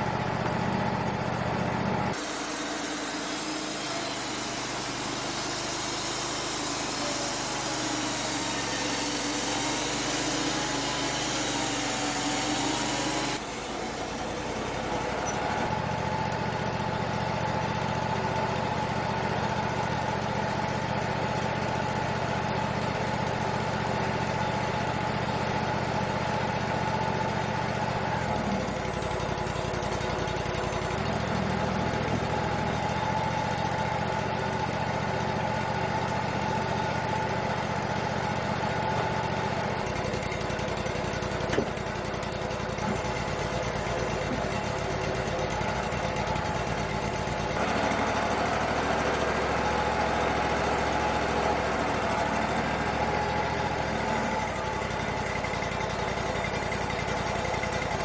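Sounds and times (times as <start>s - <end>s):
band sawmill running: 0.0s - 58.0s
blade cutting log hiss: 2.2s - 13.6s.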